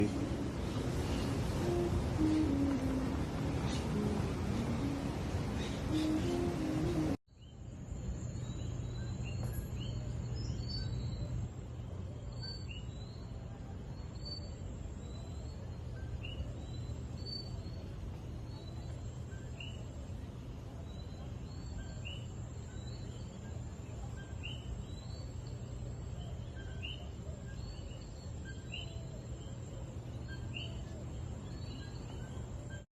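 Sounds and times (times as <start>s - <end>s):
high-pitched tone: 0.0s - 7.2s
low background hum: 0.0s - 32.9s
small birds chirping: 0.0s - 32.9s.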